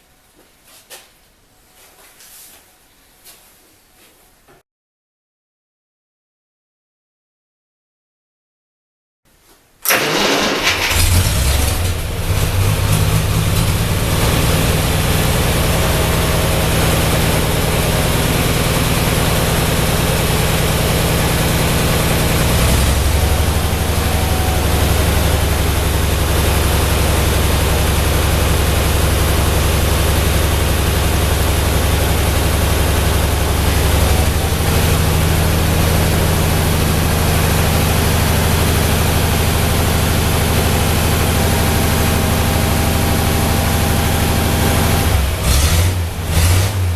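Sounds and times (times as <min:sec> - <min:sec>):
tractor engine idling: 0:09.9 - 0:46.9.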